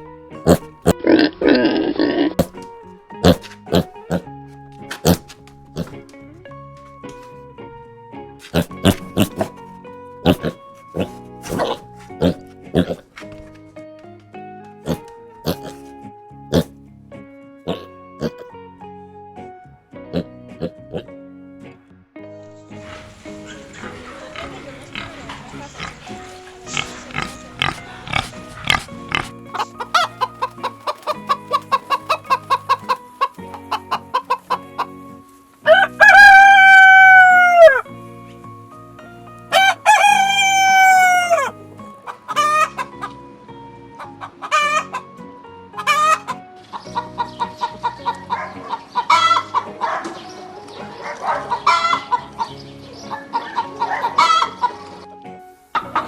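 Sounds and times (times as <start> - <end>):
chickens clucking: 8.5 - 13.2, 22.7 - 37.5, 39.5 - 55.0, 55.7 - 56.0
rooster crowing: 35.6 - 37.9, 39.5 - 41.5.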